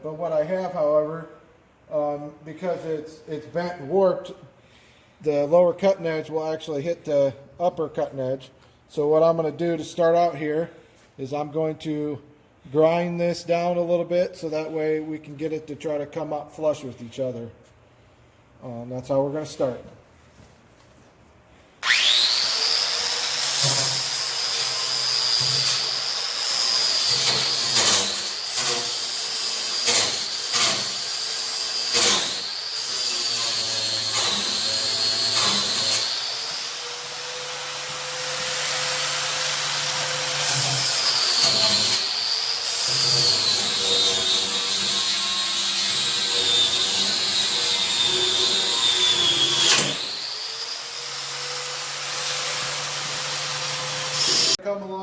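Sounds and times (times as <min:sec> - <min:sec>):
power grinder grinding steel: 0:21.8 - 0:54.6.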